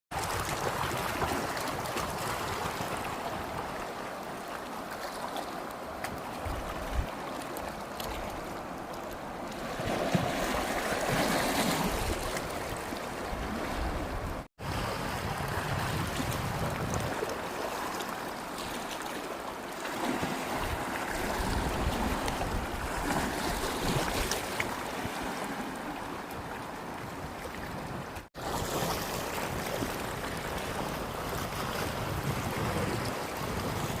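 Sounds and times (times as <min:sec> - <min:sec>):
sea waves breaking on shore: 0:00.1 - 0:34.0
wind buffeting microphone: 0:11.1 - 0:17.7, 0:20.5 - 0:25.3, 0:28.9 - 0:34.0.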